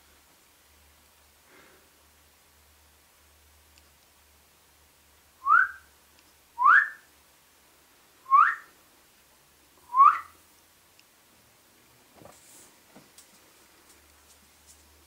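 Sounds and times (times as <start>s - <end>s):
short rising whistles: 5.4s - 5.9s, 6.6s - 7.0s, 8.3s - 8.7s, 9.9s - 10.4s.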